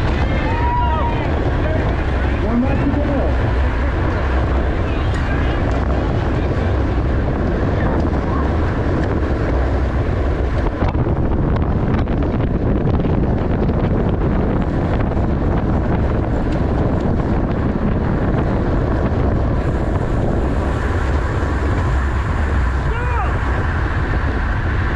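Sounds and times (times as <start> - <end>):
wind rushing over microphone: 0.0 - 24.9.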